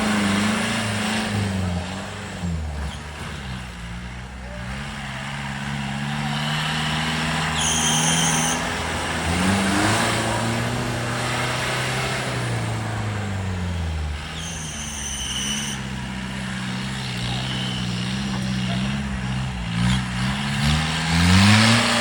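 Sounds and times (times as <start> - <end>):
off-road engine revving: 0.0 - 22.0
high whistle-like tone: 7.4 - 8.8, 14.3 - 16.0, 17.3 - 18.0.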